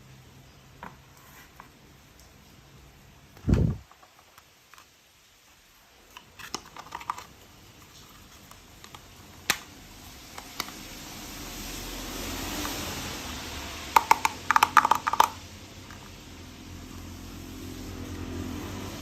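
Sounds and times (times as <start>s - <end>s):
plastic toy pieces clicking: 6.4s - 7.4s, 13.9s - 16.1s.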